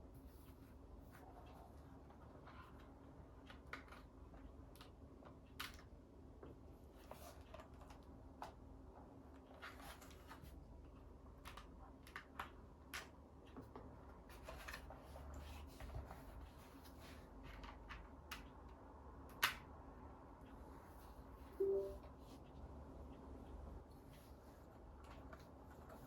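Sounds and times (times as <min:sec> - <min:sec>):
low steady hum: 0:21.4 - 0:22.6.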